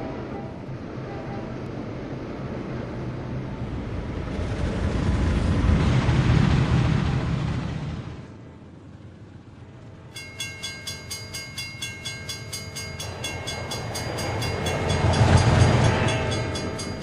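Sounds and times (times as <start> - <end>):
train rumble: 0.0 - 17.0
railroad bell ringing: 10.1 - 17.0.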